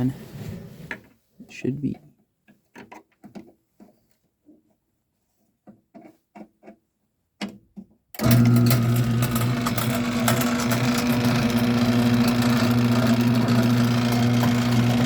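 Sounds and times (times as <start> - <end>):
garage door opener motor humming: 8.2 - 15.0.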